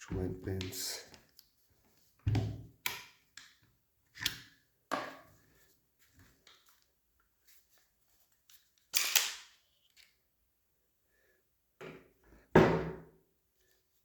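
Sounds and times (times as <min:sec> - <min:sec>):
plastic parts clicking and clacking: 0:09.0 - 0:10.1.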